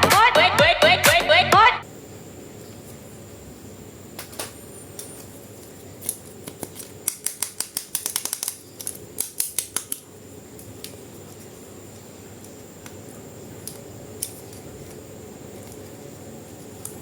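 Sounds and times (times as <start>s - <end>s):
scissors snipping: 6.0s - 10.1s.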